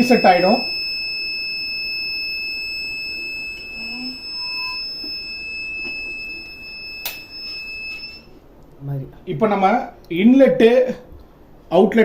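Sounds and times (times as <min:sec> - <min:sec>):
water purifier buzzer beeping: 0:00.0 - 0:08.3
sharp click: 0:07.0 - 0:07.3.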